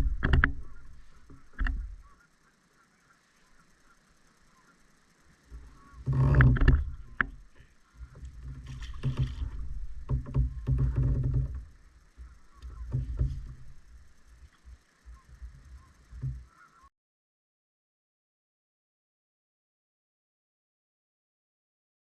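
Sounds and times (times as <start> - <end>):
hull knocks: 0.0 - 2.2, 5.5 - 16.5
boat rumbling: 0.0 - 16.9.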